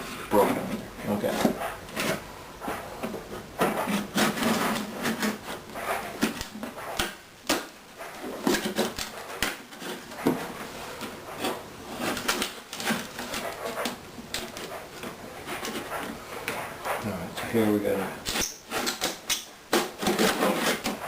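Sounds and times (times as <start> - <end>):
wood creaking and cracking: 3.0 - 16.6.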